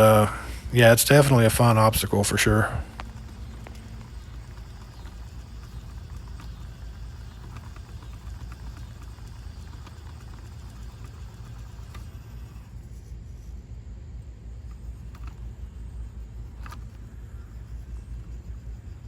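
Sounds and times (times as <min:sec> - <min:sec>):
small clicks and ticks: 0:00.0 - 0:13.0, 0:14.2 - 0:19.0
tyres scrabbling on rock: 0:00.0 - 0:13.0
small motor drive: 0:00.0 - 0:19.0
steady low rumble: 0:00.0 - 0:19.0.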